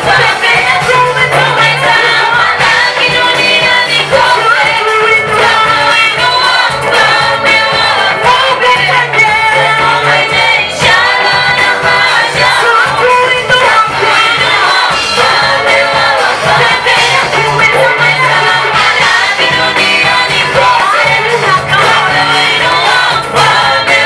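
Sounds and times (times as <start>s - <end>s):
choir singing gospel: 0.0s - 24.0s
instrumental backing with bass: 0.0s - 24.0s.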